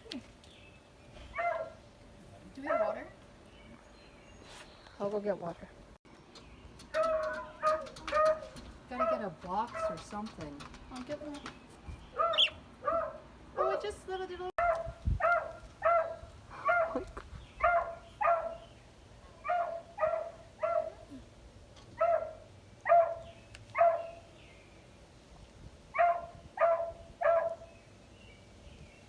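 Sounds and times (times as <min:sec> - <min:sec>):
dog barking high-pitched: 0:01.3 - 0:01.8, 0:07.0 - 0:10.0, 0:12.2 - 0:13.8, 0:14.6 - 0:17.0, 0:17.6 - 0:18.6, 0:19.3 - 0:21.0, 0:22.0 - 0:23.2, 0:23.8 - 0:24.2, 0:26.0 - 0:27.6.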